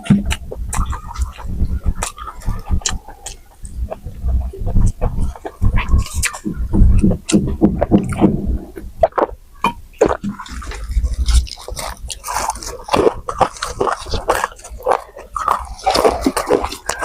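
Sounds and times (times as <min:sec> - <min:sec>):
mouth smacks and clicks: 0:00.0 - 0:17.0
wet chewing and slurping: 0:00.0 - 0:17.0.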